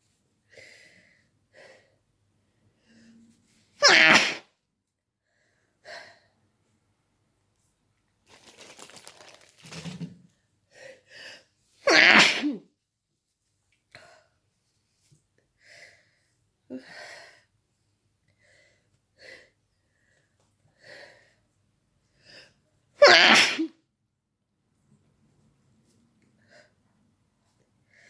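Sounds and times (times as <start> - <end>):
person sneezing: 3.8 - 4.4, 11.9 - 12.6, 23.0 - 23.7.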